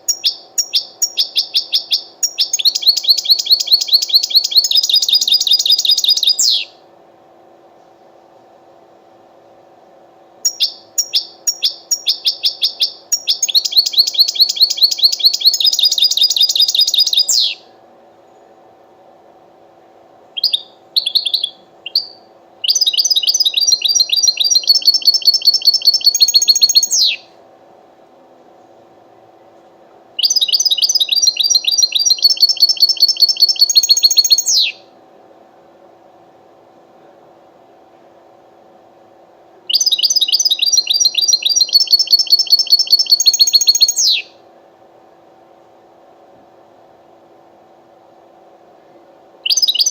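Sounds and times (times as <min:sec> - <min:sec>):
finch singing trills: 0:00.0 - 0:06.8, 0:10.4 - 0:17.7, 0:20.4 - 0:27.3, 0:30.2 - 0:34.8, 0:39.7 - 0:44.3, 0:49.4 - 0:49.9
steady low hum: 0:00.0 - 0:49.9.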